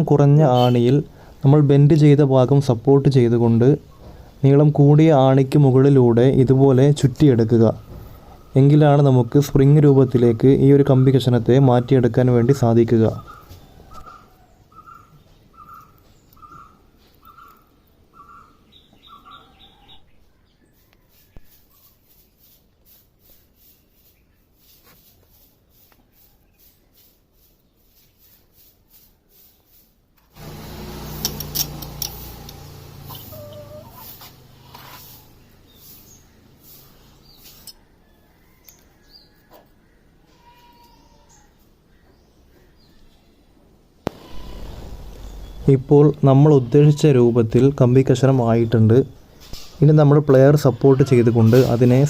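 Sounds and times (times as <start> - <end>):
bird calling short note: 44.2 - 45.7.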